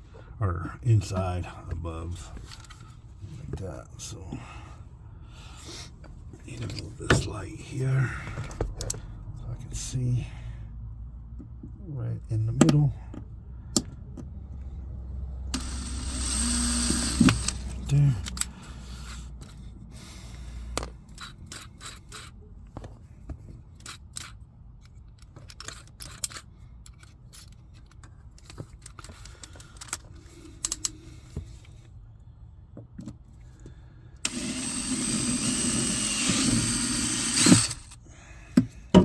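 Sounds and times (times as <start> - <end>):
power drill running: 15.6 - 17.9, 34.2 - 38.0
clicks and knocks of tools: 16.9 - 18.6, 20.7 - 31.8.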